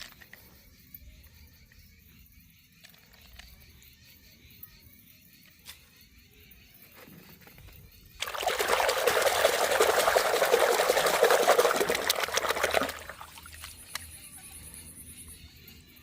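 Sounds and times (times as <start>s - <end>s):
water running and splashing: 8.2s - 13.7s.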